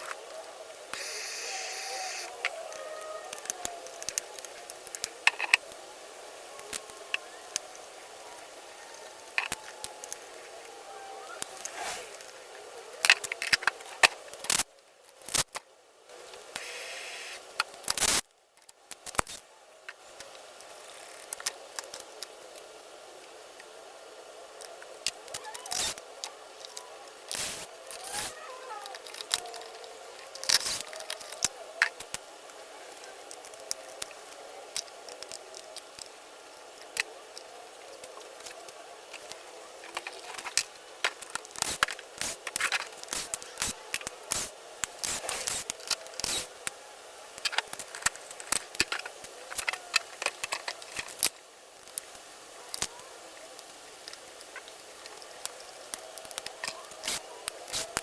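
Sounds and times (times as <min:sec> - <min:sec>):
tools and parts clicking: 0:25.7 - 0:26.0, 0:26.6 - 0:28.3, 0:40.0 - 0:46.5, 0:55.4 - 0:58.0.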